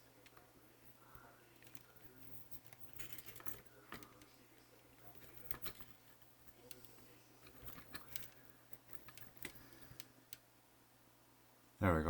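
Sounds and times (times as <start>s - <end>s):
small model parts clicking: 5.1s - 10.4s.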